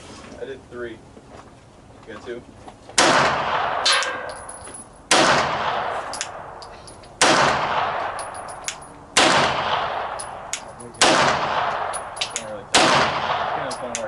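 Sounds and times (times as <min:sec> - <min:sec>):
echoing gunshots: 0:03.0 - 0:04.4, 0:05.1 - 0:06.6, 0:07.2 - 0:08.5, 0:09.1 - 0:14.0.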